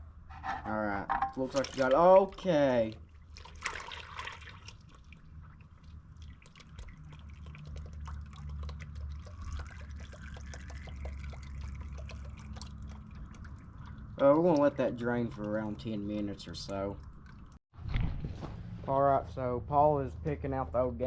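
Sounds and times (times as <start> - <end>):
oil trickling into drain pan: 1.4 - 17.6.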